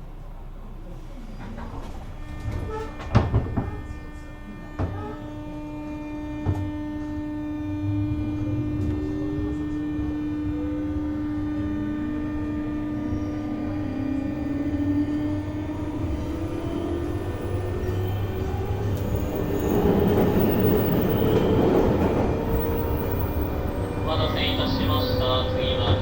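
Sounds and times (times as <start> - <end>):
train motor whine: 1.4 - 26.0.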